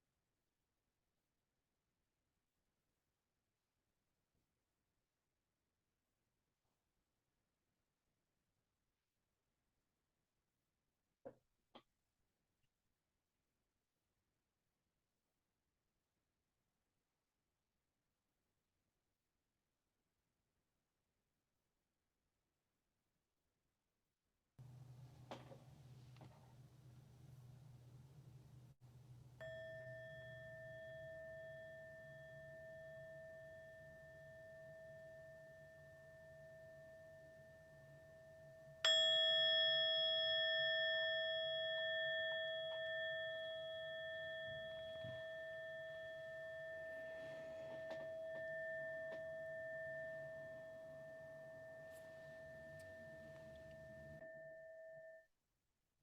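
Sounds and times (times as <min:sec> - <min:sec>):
meditation bell ringing: 0:29.4 - 0:55.2.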